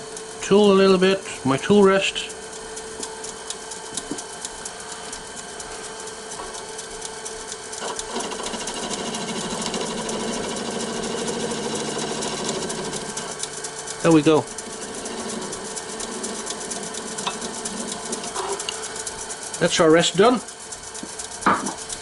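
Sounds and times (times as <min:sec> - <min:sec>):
wood lathe motor hum: 0:00.0 - 0:22.0
chisel cutting spinning wood: 0:06.0 - 0:22.0.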